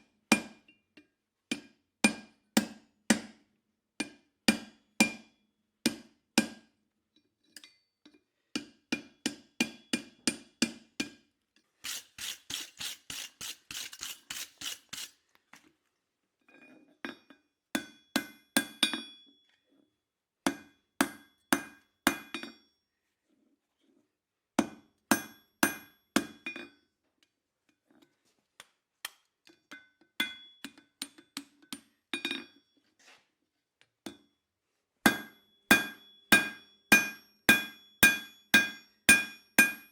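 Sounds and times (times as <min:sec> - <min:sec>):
hammer striking steel on anvil: 0:35.1 - 0:39.9.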